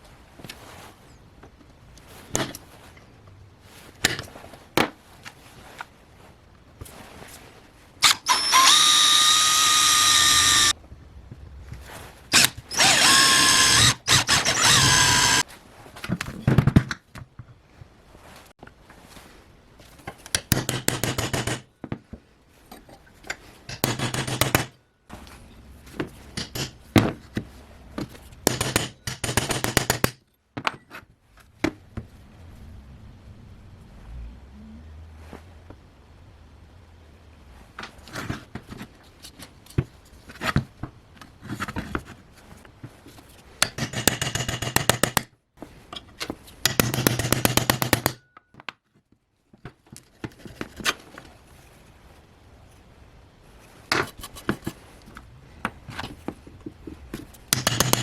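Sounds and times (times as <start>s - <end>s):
power tool motor whine: 8.0s - 10.7s, 12.4s - 15.4s.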